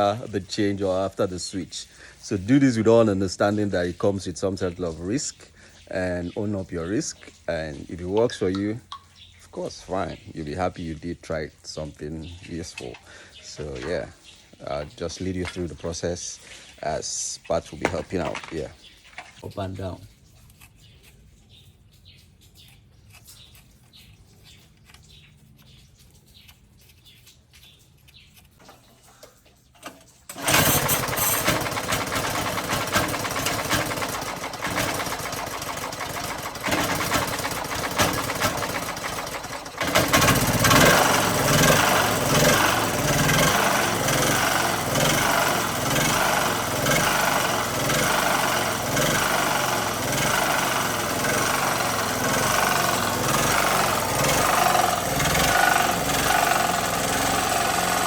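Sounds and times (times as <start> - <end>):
generator engine running: 29.8 - 58.0.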